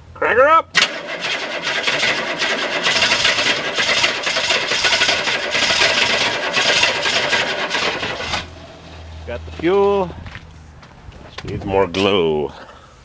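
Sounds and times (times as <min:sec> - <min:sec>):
diesel engine cranking without firing: 0:00.7 - 0:09.1.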